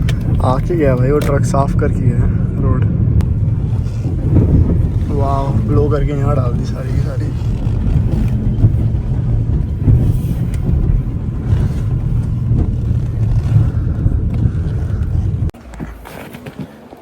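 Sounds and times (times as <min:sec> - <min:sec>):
car engine and road noise inside cabin: 0:00.0 - 0:16.0.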